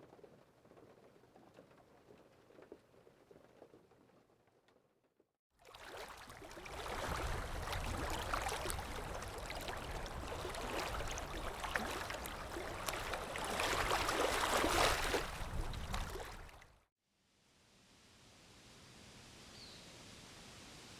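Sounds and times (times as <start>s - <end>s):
water splashing and gurgling: 5.6s - 16.8s.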